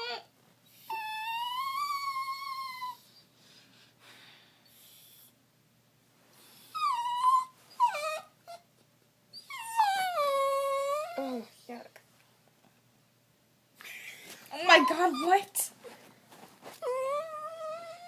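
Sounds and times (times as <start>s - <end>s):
dog whining: 0.0s - 3.3s, 6.6s - 8.7s, 9.3s - 11.7s, 14.6s - 15.6s, 16.8s - 18.0s.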